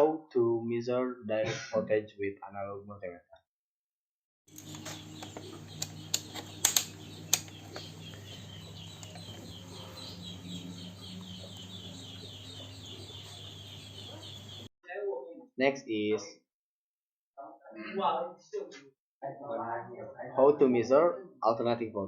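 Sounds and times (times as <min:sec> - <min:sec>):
handling clicks: 0:04.5 - 0:08.2
steady low hum: 0:04.5 - 0:14.7.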